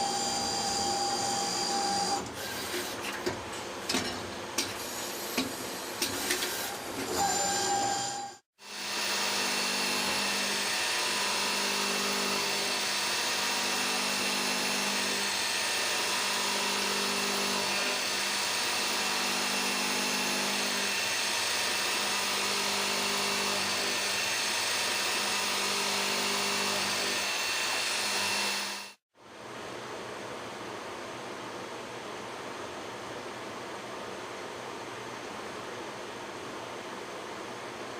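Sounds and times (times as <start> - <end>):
high machine whine: 0.0 - 2.3.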